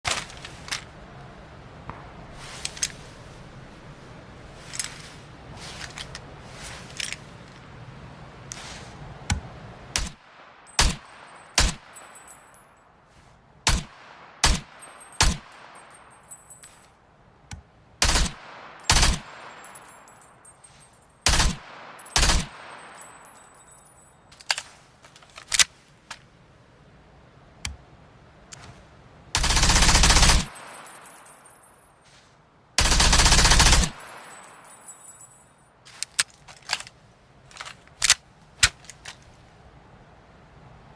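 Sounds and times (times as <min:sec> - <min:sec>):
submachine gun firing: 0:18.0 - 0:19.4, 0:21.3 - 0:22.8, 0:29.4 - 0:30.6, 0:32.8 - 0:34.0.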